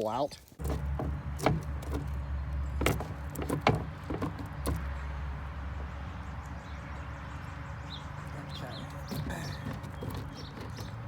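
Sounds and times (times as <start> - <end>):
wooden frames knocking and scraping: 0.6 - 5.6, 8.4 - 11.0.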